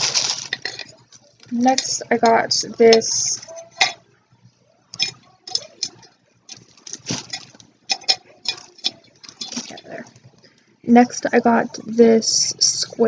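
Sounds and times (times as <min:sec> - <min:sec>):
packaging rustling: 0:00.0 - 0:01.6, 0:06.5 - 0:07.7, 0:08.6 - 0:10.3
objects clicking and tapping: 0:00.0 - 0:04.0, 0:04.9 - 0:10.6.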